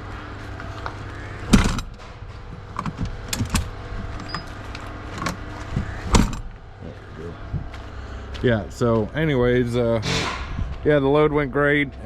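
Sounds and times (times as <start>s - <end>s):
steady low hum: 0.0s - 12.0s
knocks and clicks of handling: 0.8s - 6.6s.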